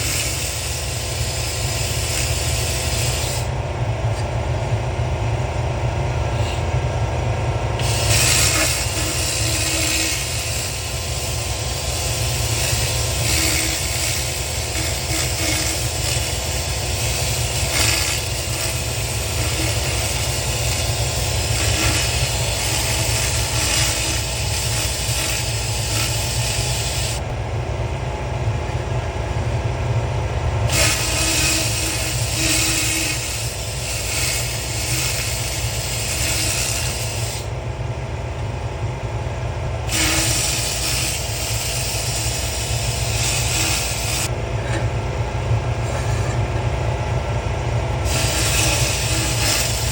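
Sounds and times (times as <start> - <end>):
low machine hum: 0.0 - 49.9
laser ablation hiss: 7.8 - 27.2, 30.7 - 37.5, 39.9 - 44.3, 48.1 - 49.9.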